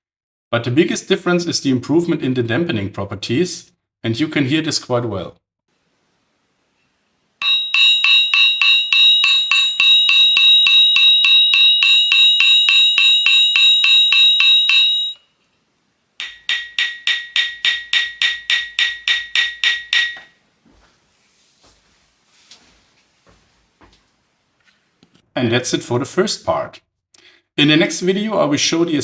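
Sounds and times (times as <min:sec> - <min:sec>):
metal profiles tapped: 0:07.4 - 0:15.2, 0:16.2 - 0:20.4
high metallic ringing: 0:07.4 - 0:15.4, 0:16.2 - 0:20.4.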